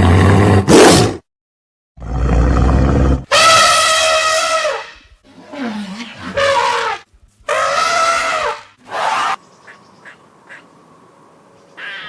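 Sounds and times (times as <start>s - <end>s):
loud animal call: 3.3s - 9.4s.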